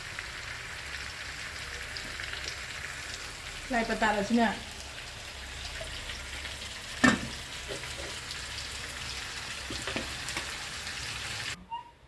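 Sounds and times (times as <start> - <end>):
food sizzling in a pan: 0.0 - 11.6
utensil knocking against pan: 7.0 - 7.8.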